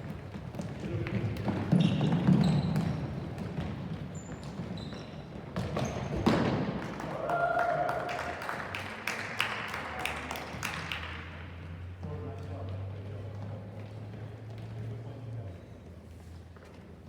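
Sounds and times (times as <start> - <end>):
distant shout: 7.0 - 8.5.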